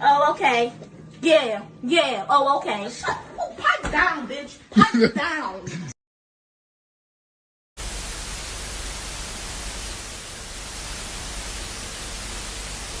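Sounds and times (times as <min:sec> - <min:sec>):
static hiss: 0:07.8 - 0:13.0.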